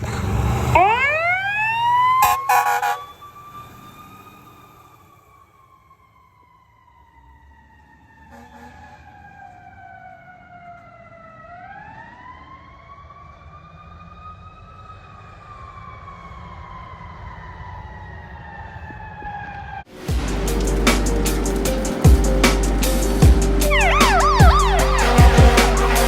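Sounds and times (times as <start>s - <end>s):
fire truck siren wailing: 0.0s - 26.0s
loud dense noise: 20.1s - 26.0s
low engine rumble: 20.1s - 26.0s.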